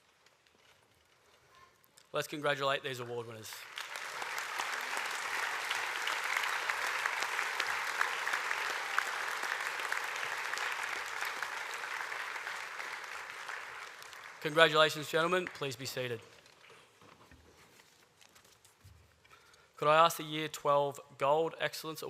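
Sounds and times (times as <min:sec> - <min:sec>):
audience applauding: 0:03.5 - 0:16.3.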